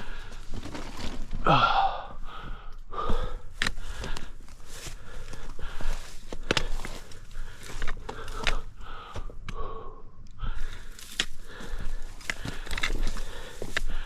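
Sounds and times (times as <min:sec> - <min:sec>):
person breathing hard: 0:00.0 - 0:00.7, 0:01.4 - 0:14.0
footsteps on rock: 0:02.3 - 0:09.6, 0:10.6 - 0:14.0.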